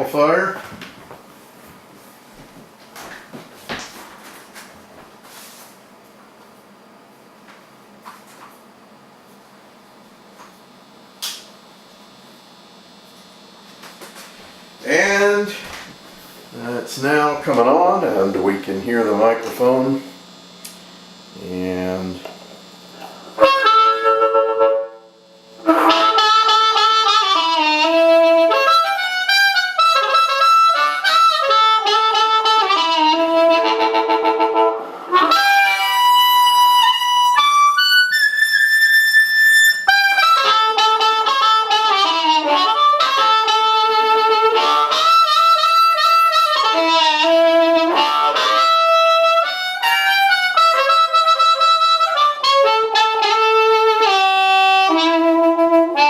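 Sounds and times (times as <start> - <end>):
amplified blues harmonica: 21.1 - 56.0.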